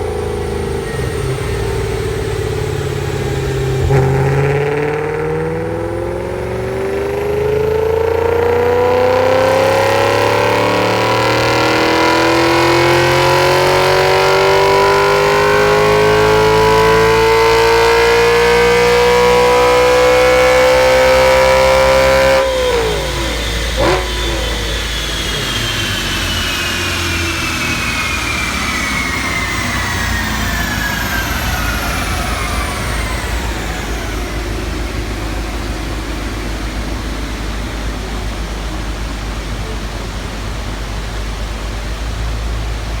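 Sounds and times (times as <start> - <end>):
exhaust pop: 0.0 - 6.9
low rumble: 0.0 - 7.2
car engine revs falling: 0.0 - 43.0
drivetrain whine: 0.0 - 43.0.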